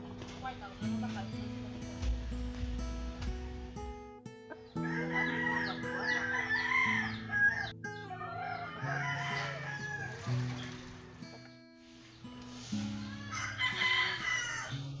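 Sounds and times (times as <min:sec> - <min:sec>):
background music: 0:00.0 - 0:15.0
chickens clucking: 0:04.5 - 0:11.4
rooster crowing: 0:04.7 - 0:11.2, 0:13.0 - 0:15.0.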